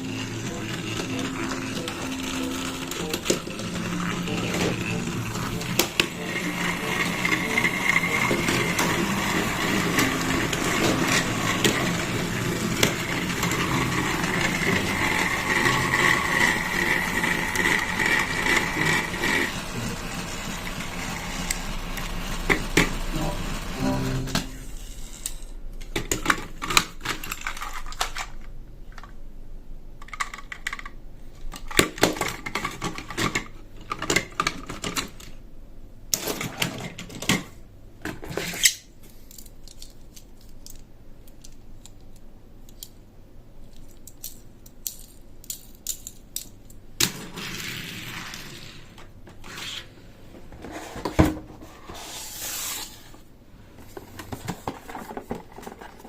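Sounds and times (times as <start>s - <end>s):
plastic toy pieces clicking: 25.2s - 29.2s, 30.0s - 35.4s, 38.6s - 43.0s, 43.6s - 47.1s.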